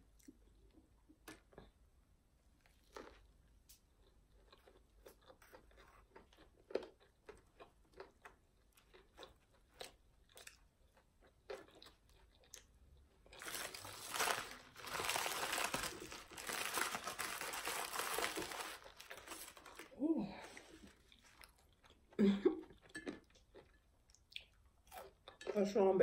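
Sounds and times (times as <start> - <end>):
soft chewing clicks: 2.6 - 13.2, 21.0 - 25.5
loud crunching and crinkling: 13.2 - 21.7.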